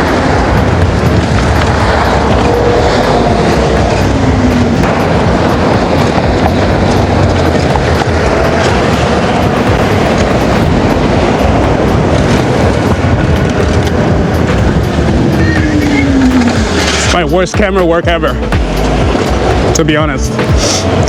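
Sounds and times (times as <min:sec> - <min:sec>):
wind rush on microphone: 0:00.0 - 0:21.0
faint whines sliding in pitch: 0:14.6 - 0:17.2.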